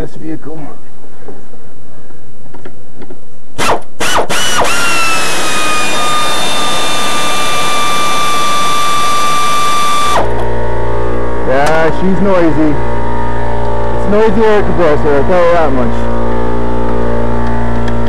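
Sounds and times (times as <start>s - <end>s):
air compressor whining: 3.6s - 18.0s.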